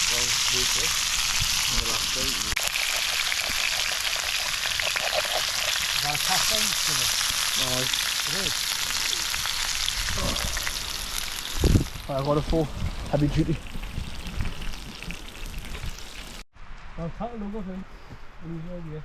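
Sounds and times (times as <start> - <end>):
food sizzling in a pan: 0.0 - 12.3.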